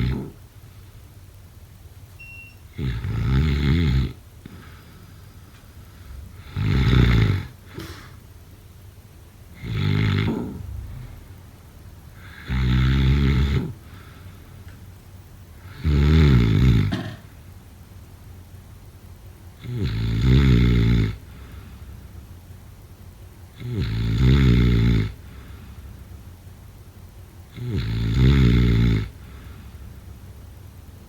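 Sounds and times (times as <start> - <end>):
person snoring: 0.0 - 0.4, 2.8 - 4.8, 6.3 - 8.1, 9.6 - 10.7, 12.2 - 14.2, 15.6 - 17.0, 19.6 - 21.6, 23.6 - 25.6, 27.5 - 29.6.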